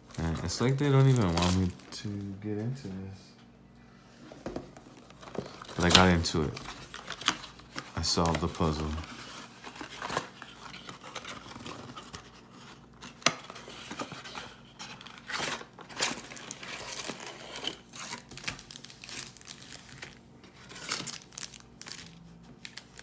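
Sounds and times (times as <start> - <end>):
packaging crinkling and tearing: 0.0 - 2.2, 4.9 - 23.0.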